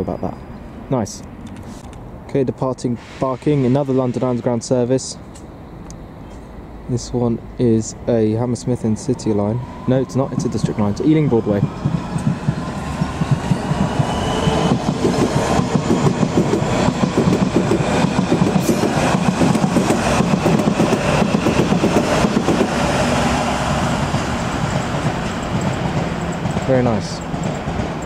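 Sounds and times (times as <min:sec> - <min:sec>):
train rumbling: 0:00.0 - 0:28.0
wheels clicking over rail joints: 0:24.0 - 0:28.0.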